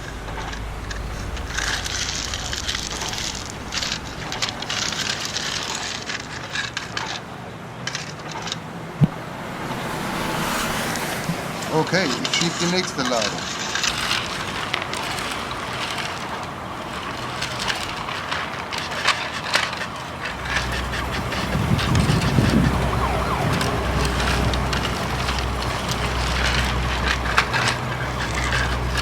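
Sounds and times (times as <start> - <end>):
low steady hum: 0.0 - 6.3
gravel scraping and clattering: 0.0 - 29.0.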